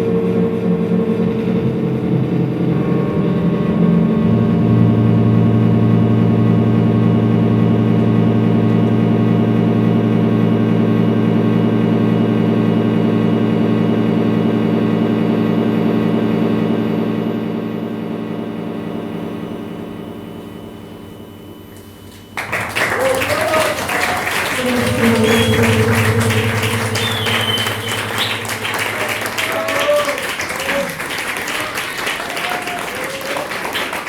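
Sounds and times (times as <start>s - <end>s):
electronic drone: 22.6s - 32.0s.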